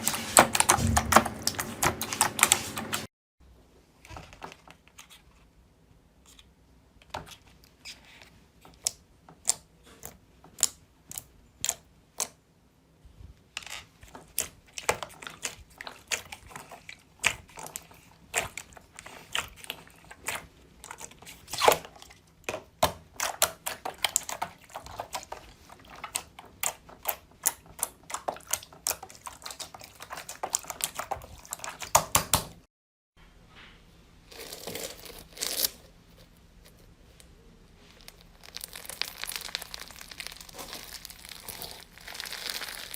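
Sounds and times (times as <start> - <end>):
slime clicking and popping: 38.2 - 42.9.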